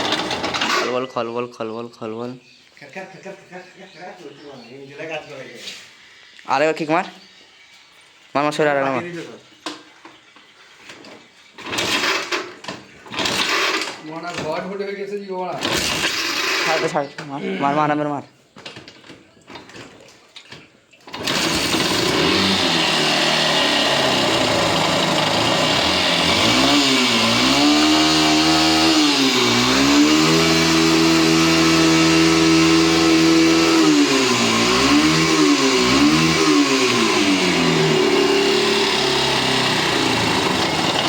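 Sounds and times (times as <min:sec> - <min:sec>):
motorcycle engine revving: 0:11.6 - 0:12.5, 0:13.1 - 0:14.0, 0:21.1 - 0:41.0.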